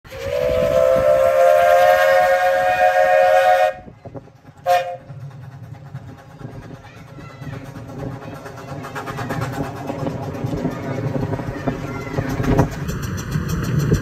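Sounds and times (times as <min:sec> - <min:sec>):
steam locomotive whistle: 0:00.1 - 0:03.9, 0:04.6 - 0:05.1.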